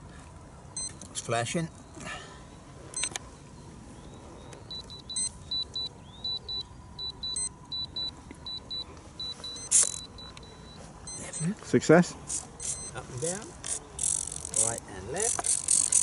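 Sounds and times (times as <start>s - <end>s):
short high electronic beeps: 4.7s - 11.5s, 12.3s - 13.0s.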